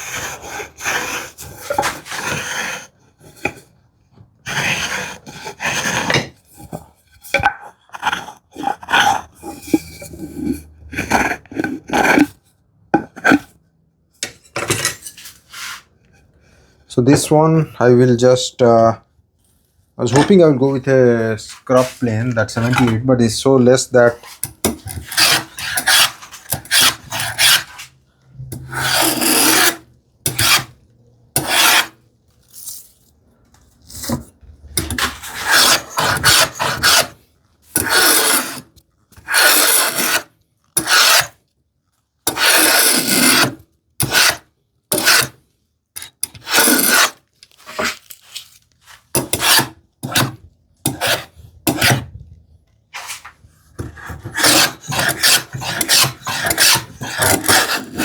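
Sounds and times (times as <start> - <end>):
hand plane shaving wood: 0.0 - 3.6, 4.5 - 6.4, 20.1 - 23.1, 24.2 - 28.0, 28.6 - 30.7, 31.4 - 32.0, 34.8 - 41.4, 42.3 - 45.4, 46.2 - 48.0, 49.2 - 50.3, 50.9 - 52.0, 52.9 - 58.0.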